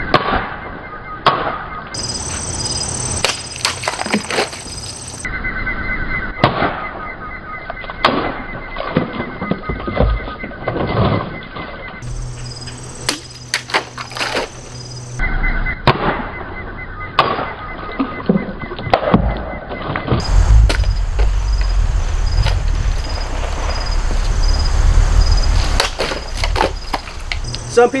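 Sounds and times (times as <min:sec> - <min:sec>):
steady high chirping: 0:02.0 - 0:06.4, 0:12.0 - 0:13.6, 0:14.5 - 0:15.8, 0:20.2 - 0:28.0.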